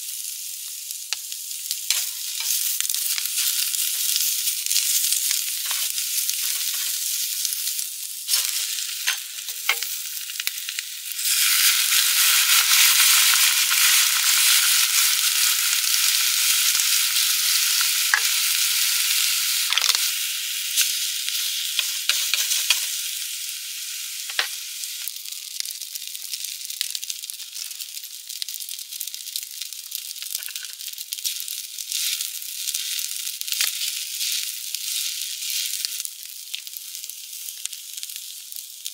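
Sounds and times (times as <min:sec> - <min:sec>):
food sizzling in a pan: 0:00.0 - 0:38.9
sharp clicks and pops: 0:19.7 - 0:20.1.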